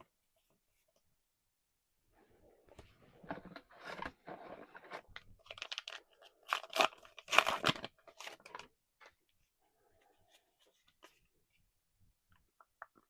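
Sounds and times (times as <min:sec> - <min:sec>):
foil wrapper tearing and crinkling: 0:05.5 - 0:08.4.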